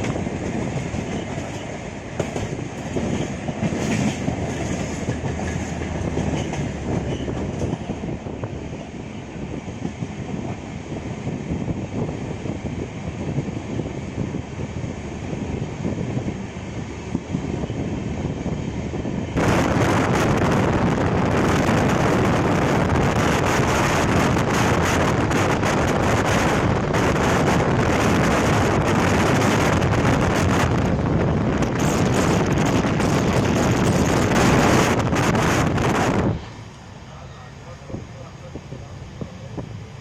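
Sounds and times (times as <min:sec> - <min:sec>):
wind buffeting microphone: 0:00.0 - 0:37.0, 0:37.8 - 0:40.0
train running noise: 0:00.0 - 0:40.0.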